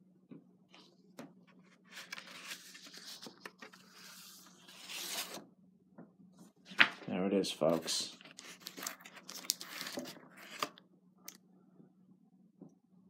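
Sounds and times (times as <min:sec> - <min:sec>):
packaging rustling and tearing: 0:01.8 - 0:05.4, 0:08.1 - 0:10.8.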